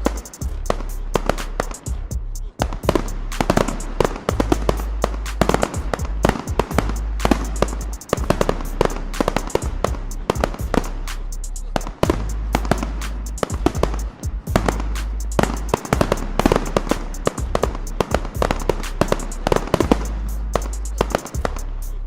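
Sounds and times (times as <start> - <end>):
steady low drone: 0.0 - 22.0
fireworks bangs and cracks: 2.6 - 4.8, 5.4 - 10.9, 11.8 - 20.1.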